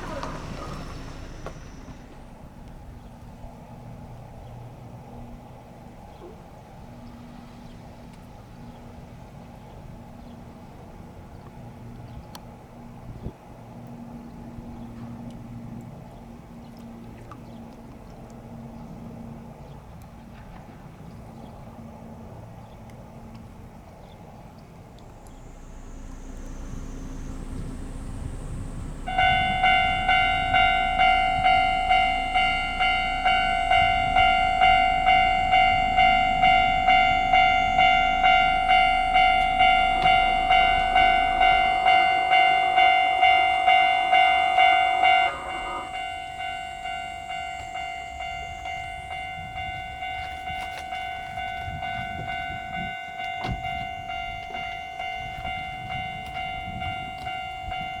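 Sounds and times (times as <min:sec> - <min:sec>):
level-crossing bell clanging: 0:28.9 - 0:58.0.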